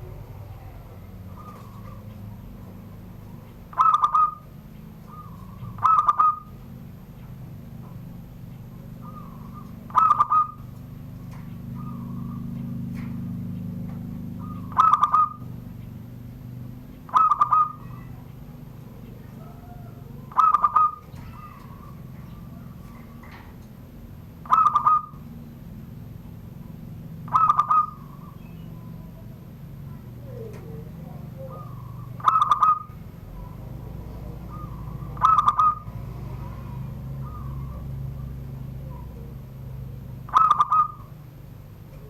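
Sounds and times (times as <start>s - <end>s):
dove cooing: 0.0s - 42.0s.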